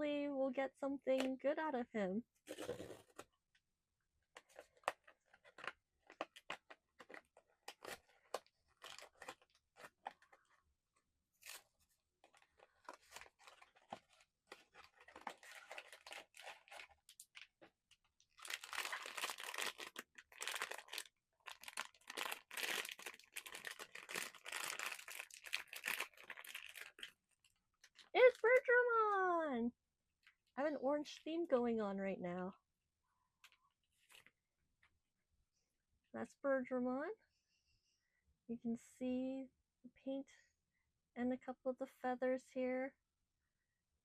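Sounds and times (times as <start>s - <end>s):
foil bag crinkling: 12.2s - 17.7s, 18.3s - 28.7s.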